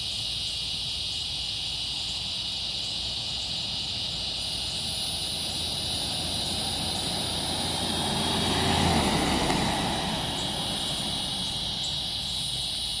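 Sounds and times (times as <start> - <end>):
crickets chirping: 0.0 - 13.0
passing engine rumble: 3.5 - 13.0.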